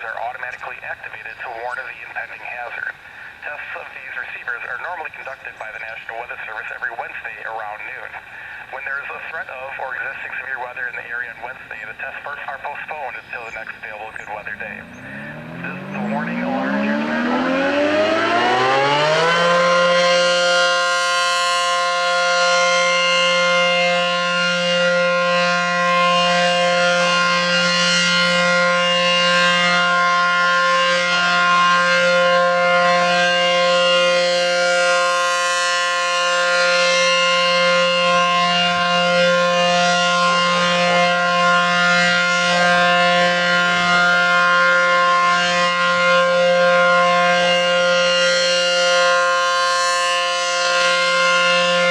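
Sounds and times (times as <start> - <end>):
warning siren steady tone: 13.2 - 51.9.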